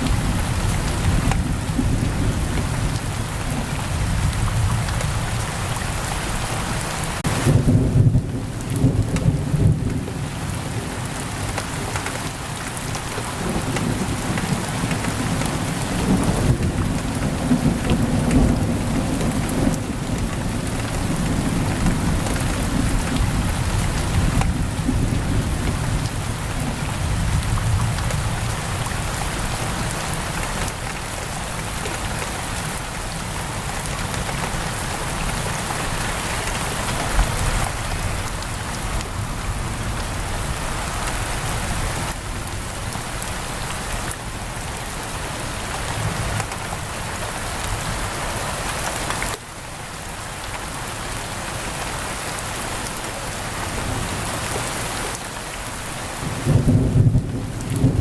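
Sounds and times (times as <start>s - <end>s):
heavy rain on a window: 0.0s - 58.0s
thunder rumbling: 13.0s - 29.8s, 56.2s - 58.0s.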